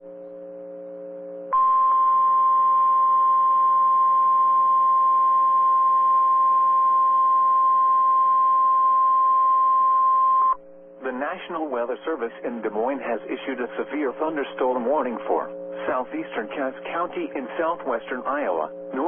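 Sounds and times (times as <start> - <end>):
low receiver hum: 0.0 - 19.0
loud steady high beep: 1.5 - 10.6.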